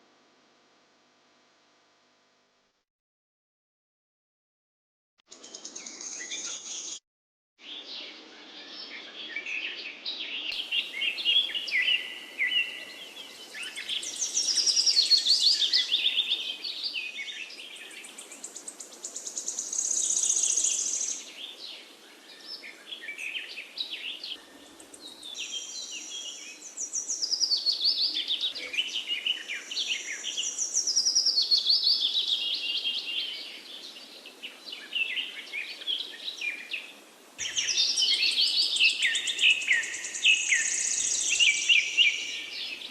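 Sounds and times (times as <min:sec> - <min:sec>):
songbirds chirping and singing: 0:07.6 - 0:42.9
faint steady hiss: 0:10.4 - 0:27.3, 0:32.1 - 0:42.9.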